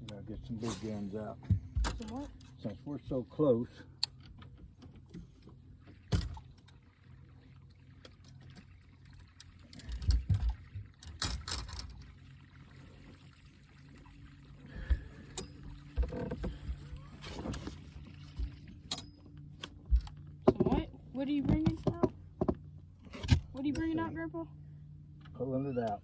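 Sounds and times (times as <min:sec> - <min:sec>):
fishing gear knocking in a boat: 0:19.7 - 0:22.7.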